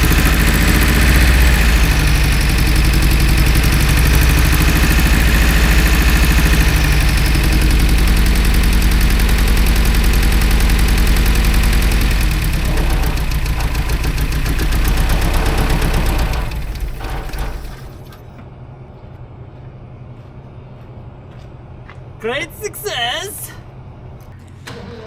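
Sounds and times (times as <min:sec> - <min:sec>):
car engine idling: 0:00.0 - 0:18.0.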